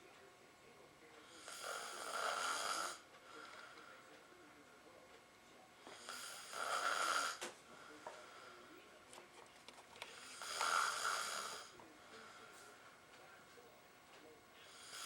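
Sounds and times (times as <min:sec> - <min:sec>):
man snoring: 0:01.3 - 0:03.0, 0:06.0 - 0:07.4, 0:10.2 - 0:11.7, 0:14.7 - 0:15.0.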